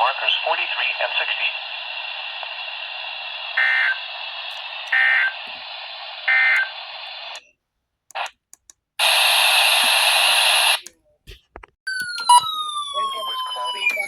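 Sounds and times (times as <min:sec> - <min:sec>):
radio receiver hiss: 0:00.0 - 0:07.4, 0:09.0 - 0:10.9.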